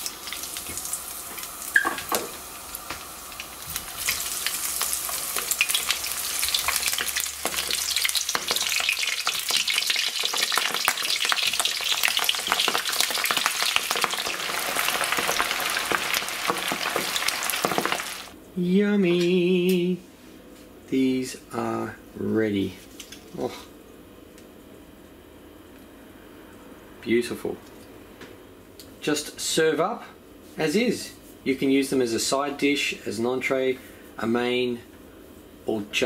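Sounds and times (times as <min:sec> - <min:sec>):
prawns deep frying in hot oil: 0:00.0 - 0:18.4.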